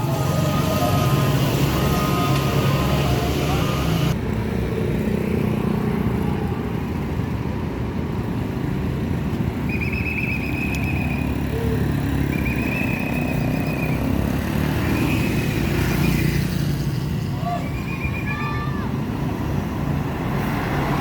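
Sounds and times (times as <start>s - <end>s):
bus engine rumbling: 0.0s - 4.5s, 5.9s - 21.0s.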